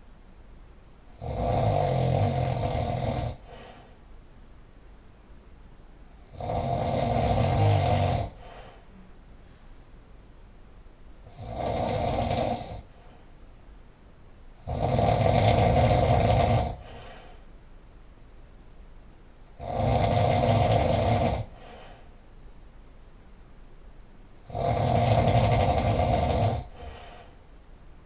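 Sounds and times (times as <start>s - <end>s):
person snoring loudly: 1.1s - 3.8s, 6.2s - 8.6s, 11.3s - 12.9s, 14.6s - 17.3s, 19.5s - 21.9s, 24.4s - 27.2s
quiet breathing: 1.1s - 4.1s, 6.0s - 10.2s, 11.2s - 13.5s, 14.5s - 17.6s, 19.6s - 22.4s, 24.4s - 27.6s.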